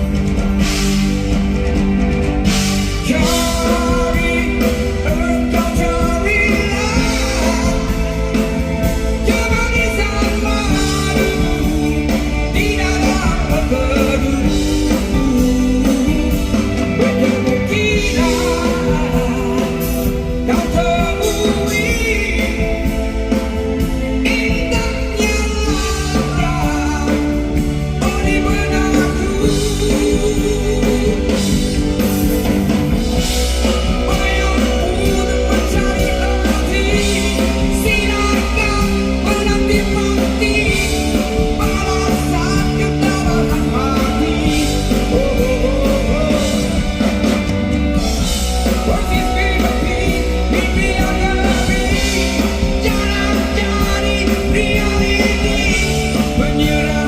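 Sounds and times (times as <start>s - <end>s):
live rock band with singing: 0.0s - 57.0s.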